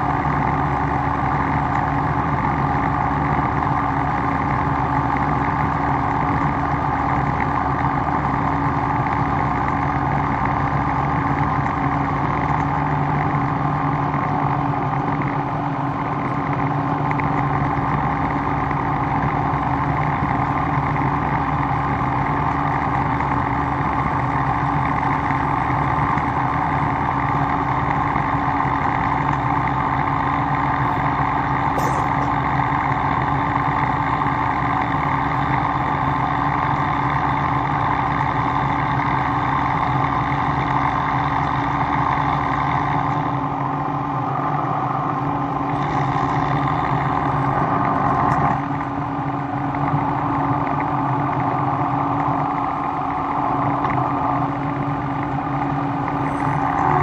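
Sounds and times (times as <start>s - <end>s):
machine humming: 43.2s - 57.0s.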